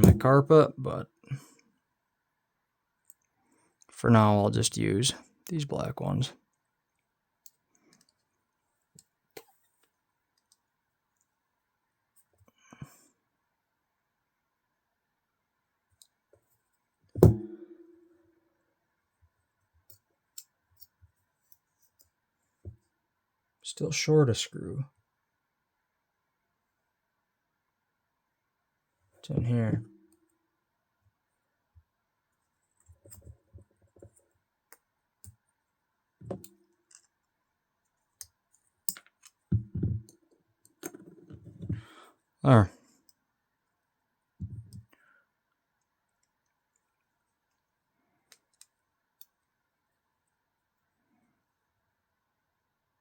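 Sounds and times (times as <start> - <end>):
faint clicks of tiny screws: 48.2 - 49.4.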